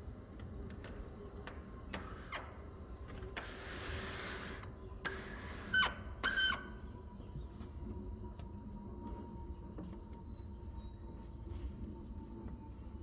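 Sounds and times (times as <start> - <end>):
bird chirps and clicks: 0.4 - 2.5
high insect trill: 3.6 - 7.3.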